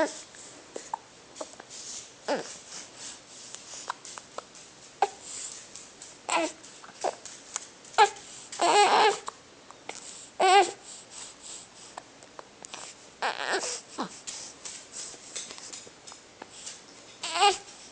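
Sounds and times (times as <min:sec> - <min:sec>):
small child crying: 0:06.3 - 0:07.2, 0:08.0 - 0:09.3, 0:10.4 - 0:10.8, 0:13.2 - 0:14.1, 0:17.2 - 0:17.7.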